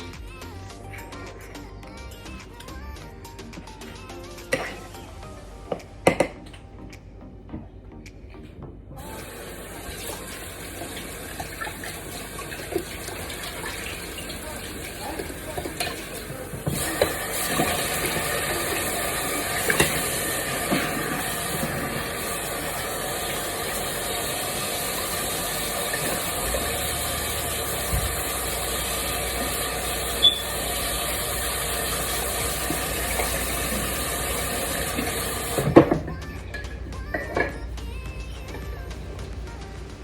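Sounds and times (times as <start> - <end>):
low hum: 0.0 - 40.0
steady hissing: 9.0 - 40.0.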